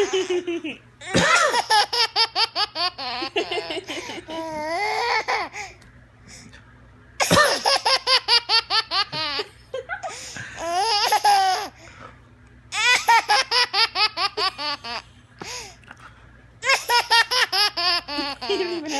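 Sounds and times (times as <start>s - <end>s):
baby laughing: 0.0s - 5.7s, 7.2s - 11.8s, 12.7s - 15.0s, 16.6s - 18.9s.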